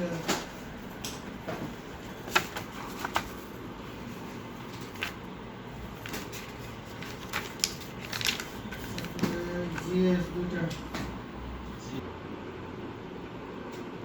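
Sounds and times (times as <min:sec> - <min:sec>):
paper-like rustles: 0:02.0 - 0:05.3, 0:05.9 - 0:10.0.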